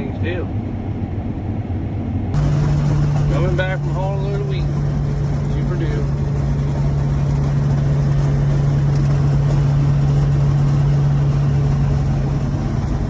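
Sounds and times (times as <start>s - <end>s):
vehicle engine running steadily: 0.0s - 13.0s.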